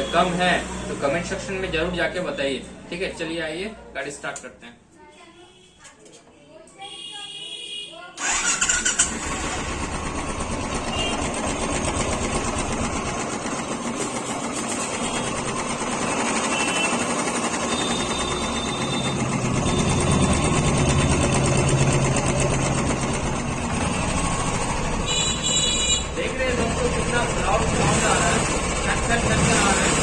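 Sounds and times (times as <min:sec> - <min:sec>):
motorcycle engine idling: 0:08.2 - 0:30.0.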